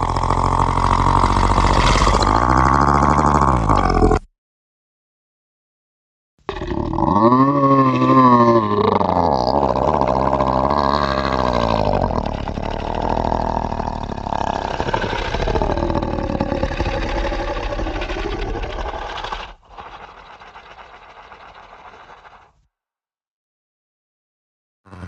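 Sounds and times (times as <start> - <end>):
deep rumbling drone: 0.0 - 4.2, 6.6 - 19.4.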